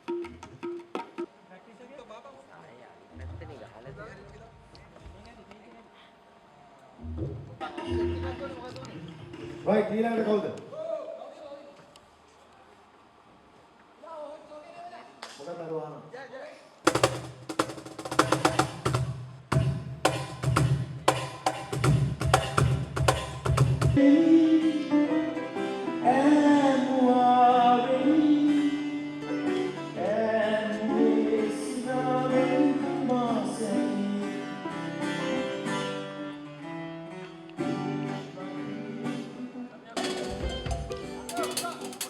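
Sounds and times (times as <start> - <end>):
low bass line: 3.2 - 5.0, 7.0 - 8.7
drums struck: 3.2 - 5.2, 7.0 - 8.6, 16.9 - 24.0, 40.0 - 42.0.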